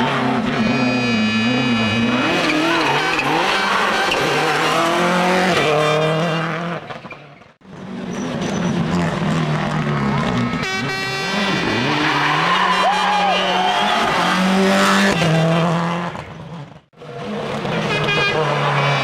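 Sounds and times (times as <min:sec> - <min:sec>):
rally car engines revving: 0:00.0 - 0:19.0.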